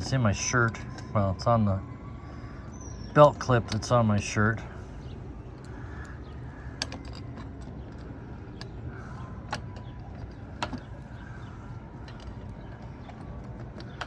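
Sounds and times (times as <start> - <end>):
steady low rumble: 0.0 - 14.0
metal lock parts clicking: 3.3 - 4.2, 5.5 - 14.0.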